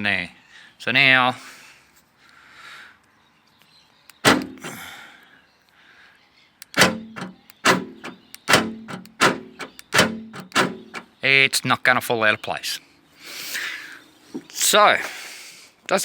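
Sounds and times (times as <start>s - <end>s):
car door lock clunking: 4.2s - 4.7s, 6.7s - 11.1s.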